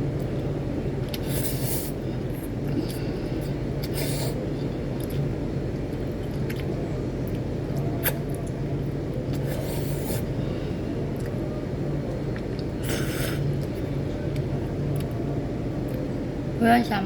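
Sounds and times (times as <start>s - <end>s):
steady low hum: 0.0s - 17.0s
hissing eating noises: 1.0s - 6.7s, 7.7s - 8.4s, 9.3s - 11.4s, 12.2s - 14.4s.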